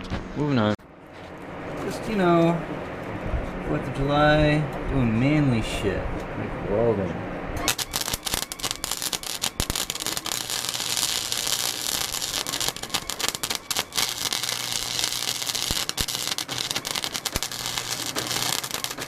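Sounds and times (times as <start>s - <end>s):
welding arc crackling and sizzling: 7.6s - 19.0s.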